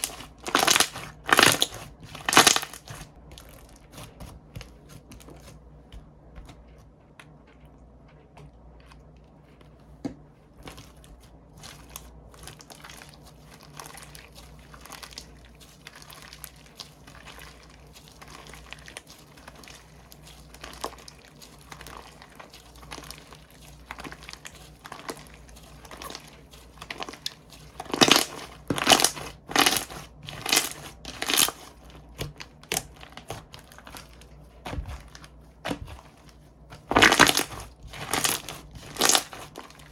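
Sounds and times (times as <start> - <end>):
slime clicking and popping: 0.0 - 4.0, 36.7 - 39.8.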